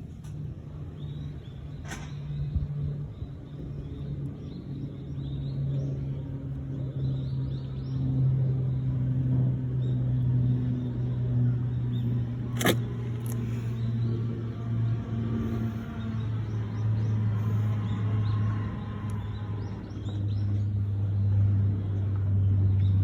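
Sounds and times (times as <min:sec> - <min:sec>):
sharp click: 0:12.5 - 0:13.4.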